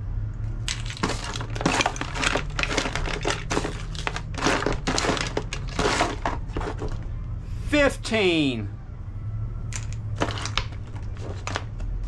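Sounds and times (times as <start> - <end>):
packaging crinkling: 0.7 - 7.0, 9.8 - 11.7.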